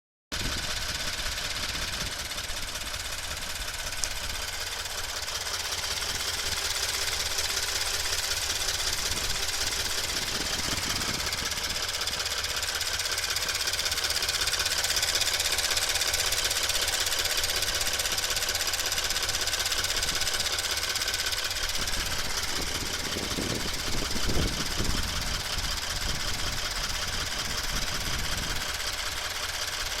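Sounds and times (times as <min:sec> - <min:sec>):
low rumble: 0:00.4 - 0:17.9
car engine running: 0:00.4 - 0:30.0
fast engine ticking: 0:00.4 - 0:30.0.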